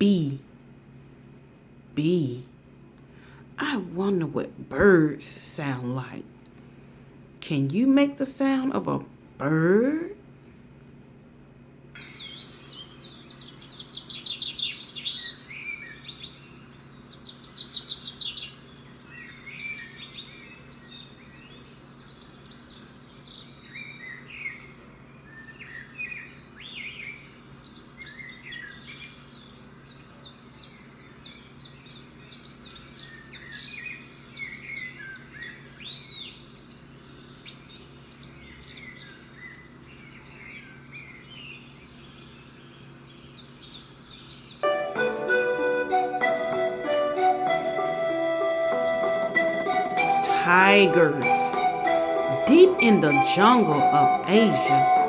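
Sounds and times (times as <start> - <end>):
birds chirping and trilling: 12.0 - 55.0.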